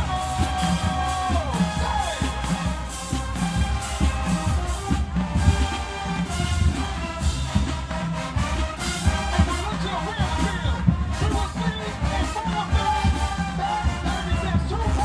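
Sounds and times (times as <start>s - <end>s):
bass drum and percussion hits: 0.0s - 9.7s
brass chords: 0.0s - 15.0s.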